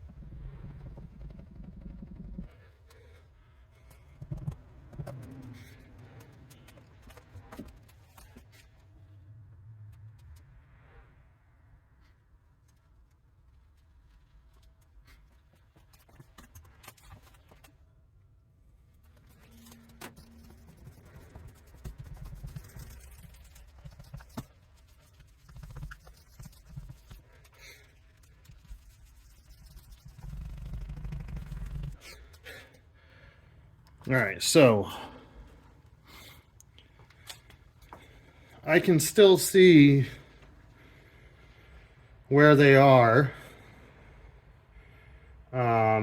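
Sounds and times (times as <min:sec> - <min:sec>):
low rumble: 0:00.0 - 0:02.7, 0:08.7 - 0:13.5
cloth rubbing on paint: 0:19.0 - 0:32.0.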